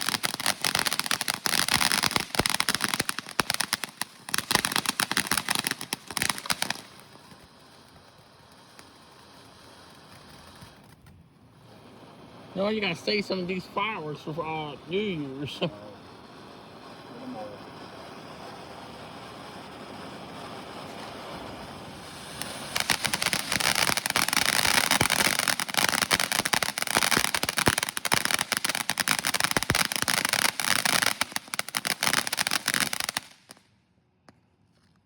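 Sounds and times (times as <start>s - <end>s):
firework fuse hiss: 0.0s - 33.6s
firework crackling pops: 0.0s - 35.0s.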